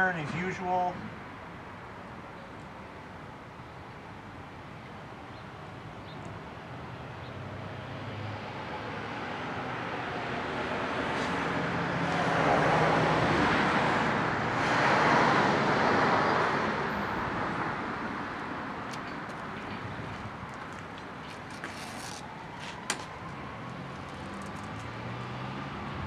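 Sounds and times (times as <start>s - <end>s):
road vehicle passing by: 6.9s - 26.0s.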